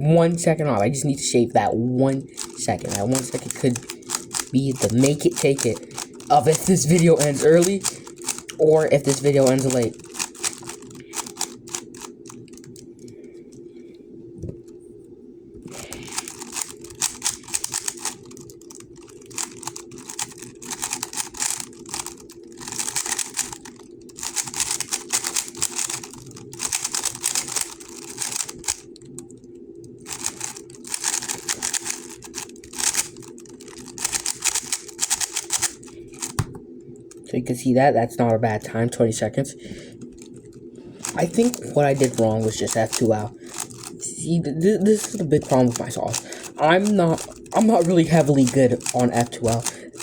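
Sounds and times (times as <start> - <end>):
puzzle cube layers clicking: 2.4 - 12.8, 15.7 - 28.8, 30.1 - 36.5, 41.0 - 43.9, 44.9 - 49.7.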